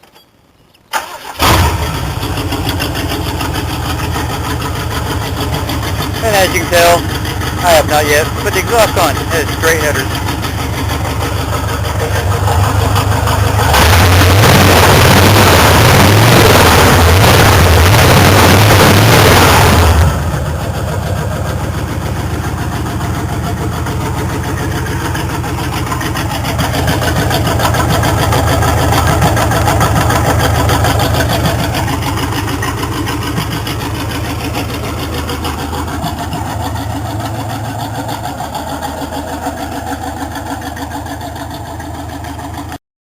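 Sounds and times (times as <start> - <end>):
engine idling on open headers: 0.0 - 42.8.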